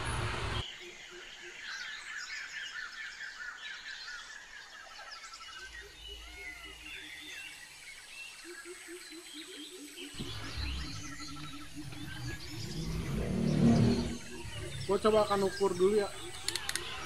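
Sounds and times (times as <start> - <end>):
small birds chirping: 0.4 - 17.0
faint low rumble: 10.2 - 16.4.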